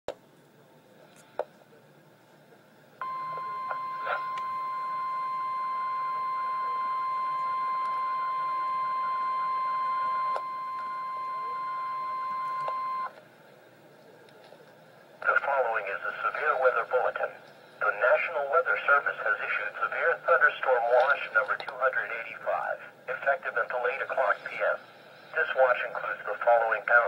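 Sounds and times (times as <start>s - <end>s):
steady alarm tone: 3.0s - 13.1s.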